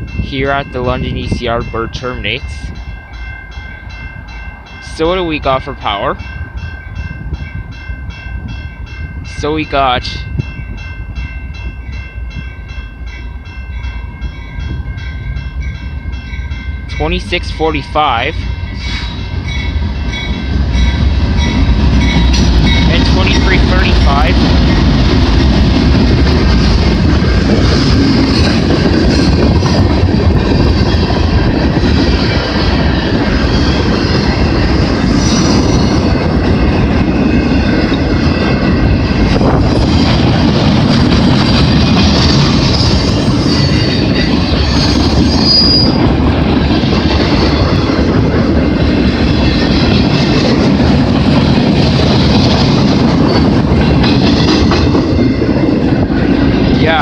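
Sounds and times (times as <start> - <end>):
rail clickety-clack: 0.0 - 57.0
train cars rumbling past: 0.0 - 57.0
high wheel squeal: 35.1 - 36.1, 42.0 - 46.0.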